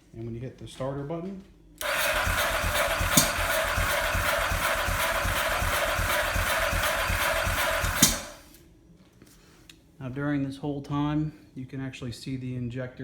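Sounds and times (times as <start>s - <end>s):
motorcycle engine cranking: 1.8s - 8.6s
sharp click: 1.8s - 8.6s.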